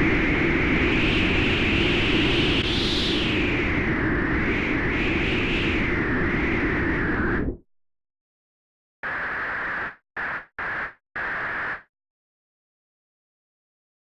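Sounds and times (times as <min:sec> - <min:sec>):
synthesized wind noise: 0:00.0 - 0:07.6.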